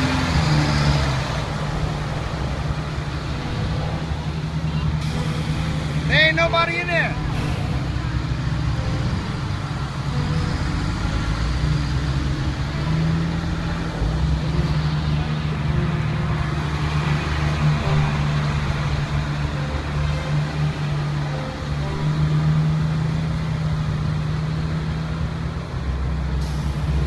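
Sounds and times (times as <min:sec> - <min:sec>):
truck engines droning: 0:00.0 - 0:27.0.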